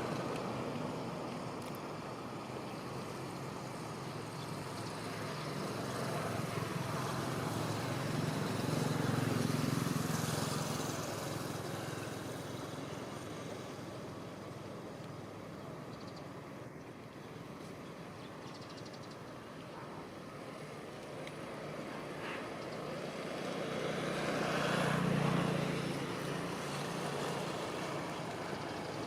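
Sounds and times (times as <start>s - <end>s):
motor vehicle passing: 4.5s - 14.2s, 21.5s - 29.0s.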